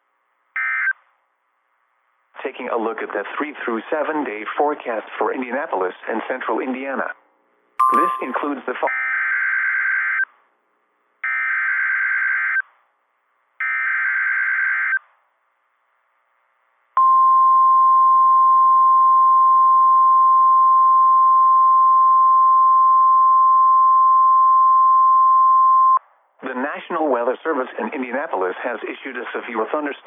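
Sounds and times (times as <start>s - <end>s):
steady alarm tone: 7.8s - 9.3s.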